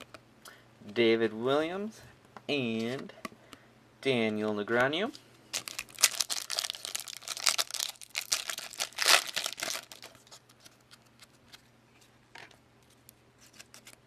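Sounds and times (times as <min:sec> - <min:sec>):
wrapper crinkling and tearing: 0:05.5 - 0:11.1.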